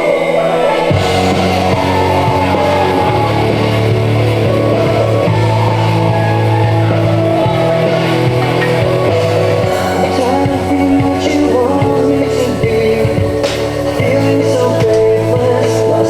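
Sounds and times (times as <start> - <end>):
rock music with distorted guitar: 0.0 - 16.0.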